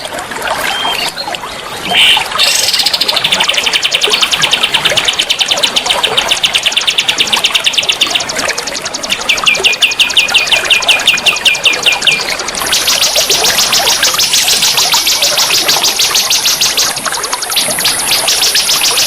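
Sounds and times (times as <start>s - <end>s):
flowing water: 0.0s - 19.0s
songbird trilling: 9.0s - 16.9s.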